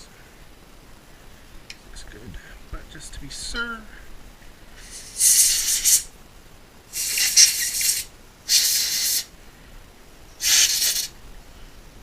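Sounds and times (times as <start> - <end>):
compressed air spray hissing: 4.8 - 6.1, 6.9 - 9.3, 10.4 - 11.2.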